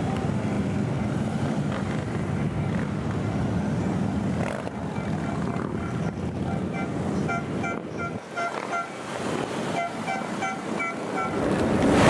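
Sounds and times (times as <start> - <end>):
many engines running: 0.0 - 12.0
motorcycle horn beeps: 5.8 - 9.0, 9.8 - 11.4.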